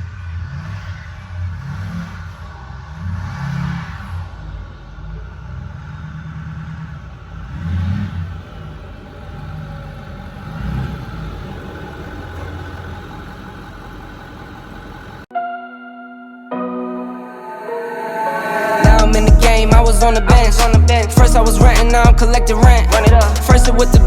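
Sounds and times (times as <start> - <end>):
vehicle engine revving: 0.0 - 15.3, 18.9 - 24.0
music: 15.3 - 24.0.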